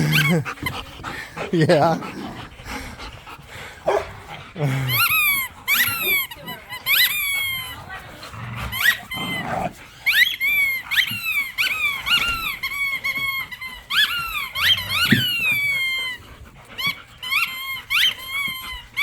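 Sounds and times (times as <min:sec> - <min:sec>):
squeaky toy squeaking: 0:00.0 - 0:00.8, 0:04.9 - 0:08.0, 0:08.6 - 0:19.0
dog growling low: 0:00.0 - 0:06.5, 0:07.2 - 0:09.9, 0:14.6 - 0:15.7.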